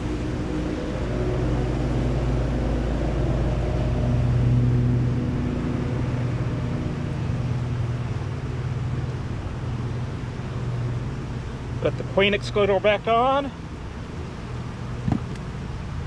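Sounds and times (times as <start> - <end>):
honeybees buzzing: 8.0 - 16.0.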